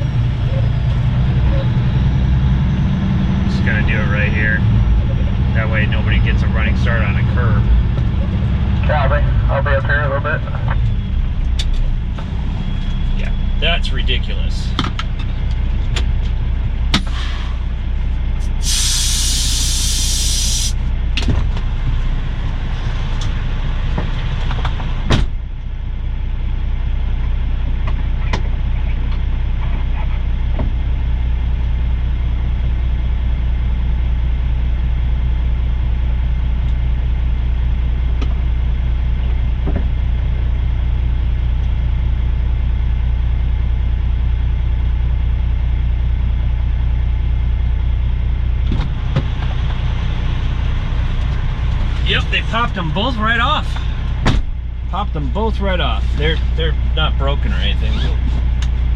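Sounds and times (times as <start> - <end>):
diesel truck engine idling: 0.0 - 58.9
air brakes hissing: 17.0 - 17.7, 18.4 - 20.8
clunks and knocks: 23.9 - 25.4, 39.6 - 40.0, 48.6 - 49.5, 54.2 - 54.6.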